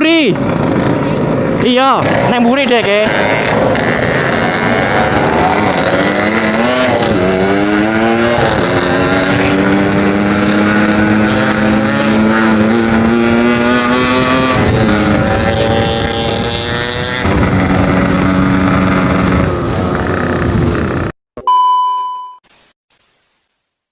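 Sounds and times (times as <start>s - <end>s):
two-stroke motorcycle engine: 0.0s - 21.1s
short electronic beep: 21.4s - 22.5s.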